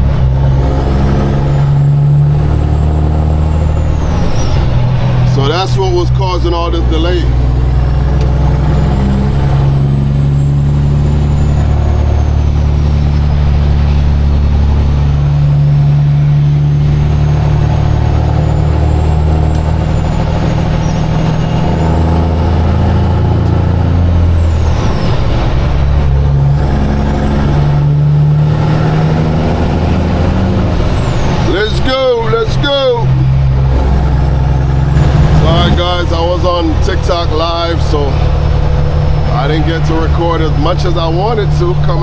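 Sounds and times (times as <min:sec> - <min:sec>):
truck diesel engine under load: 0:00.0 - 0:42.0.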